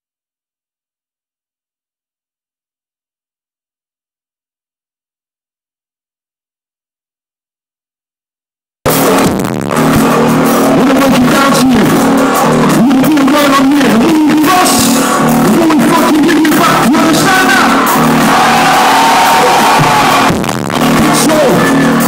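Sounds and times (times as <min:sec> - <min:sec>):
live electronic rock music: 0:08.9 - 0:22.0.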